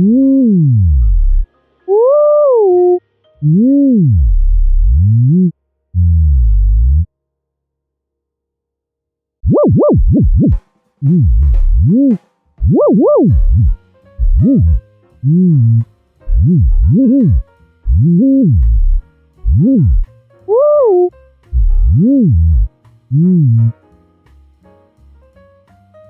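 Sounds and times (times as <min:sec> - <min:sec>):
heavy low bass: 0:00.0 - 0:01.5, 0:03.4 - 0:07.1, 0:09.4 - 0:23.7
synthesized tones gliding in pitch: 0:00.0 - 0:07.1, 0:09.4 - 0:23.7.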